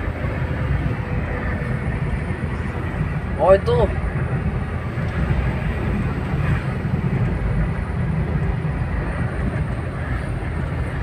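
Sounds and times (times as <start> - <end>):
vehicle engine and road rumble: 0.0 - 11.0.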